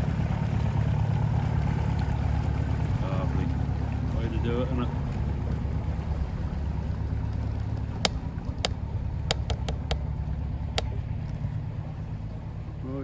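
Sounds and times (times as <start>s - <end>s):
boat engine drone: 0.0s - 13.0s
short sharp clicks: 9.3s - 10.0s.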